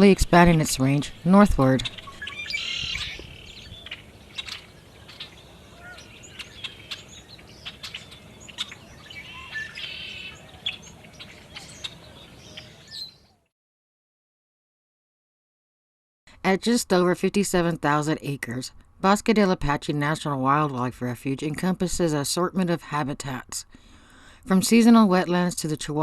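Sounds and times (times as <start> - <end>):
small birds chirping: 0.0 - 13.5.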